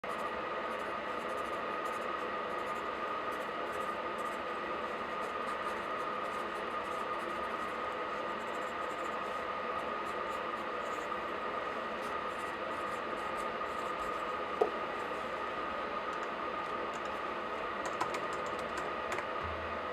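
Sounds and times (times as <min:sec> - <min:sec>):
pen scratching on paper: 0:00.1 - 0:11.3, 0:11.9 - 0:14.4.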